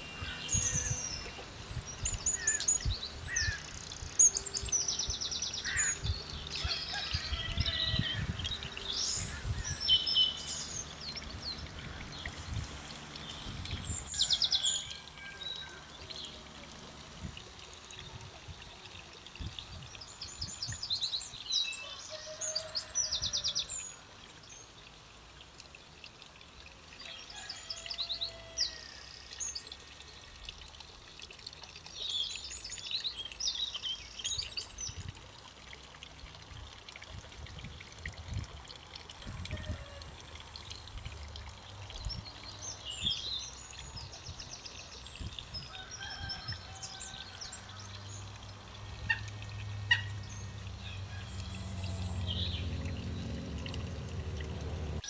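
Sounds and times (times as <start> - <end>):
songbirds trilling: 0.0 - 16.5, 42.0 - 55.0.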